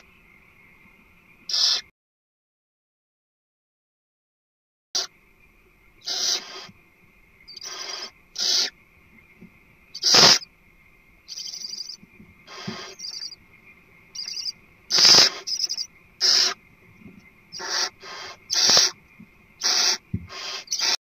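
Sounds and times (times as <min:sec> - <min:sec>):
owl hissing screeches: 0:01.5 - 0:01.9, 0:06.0 - 0:06.8, 0:07.5 - 0:08.8, 0:09.9 - 0:10.5, 0:11.3 - 0:13.4, 0:14.1 - 0:16.6, 0:17.5 - 0:19.0, 0:19.6 - 0:21.0.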